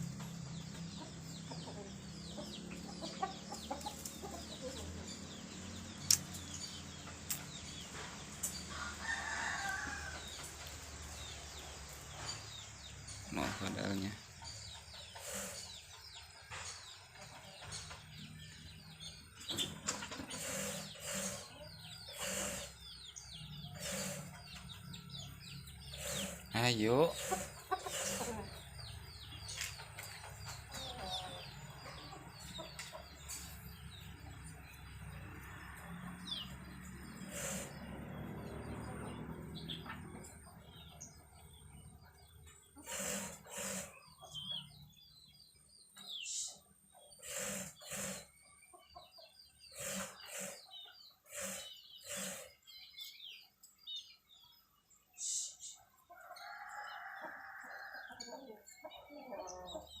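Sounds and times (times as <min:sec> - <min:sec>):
chickens clucking: 0:00.0 - 1:00.0
small birds chirping faintly: 0:00.0 - 1:00.0.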